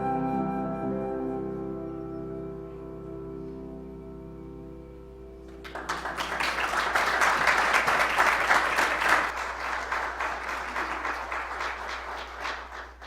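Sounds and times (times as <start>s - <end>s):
held musical chord: 0.0s - 5.7s
congregation applauding: 5.5s - 13.0s.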